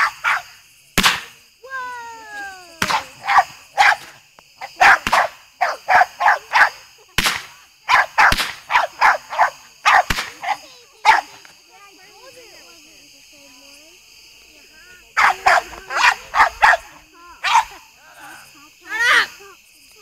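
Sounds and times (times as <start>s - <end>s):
dog barking: 0.0s - 0.6s, 3.2s - 6.9s, 7.9s - 11.4s, 15.2s - 17.8s
firework bangs: 1.0s - 1.5s, 2.7s - 5.5s, 6.5s - 9.2s, 9.9s - 11.4s.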